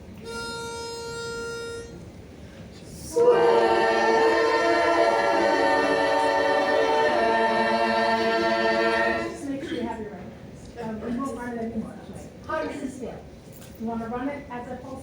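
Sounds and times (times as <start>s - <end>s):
barbershop chorus singing a cappella: 3.0s - 9.5s
steady starting note: 3.1s - 9.4s.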